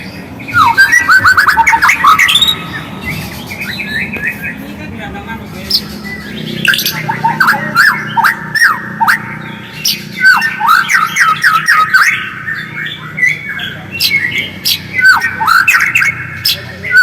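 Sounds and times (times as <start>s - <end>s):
bird calling with sliding notes: 0.0s - 4.8s, 5.6s - 17.0s
thin high chirps: 0.5s - 4.6s, 5.8s - 12.6s.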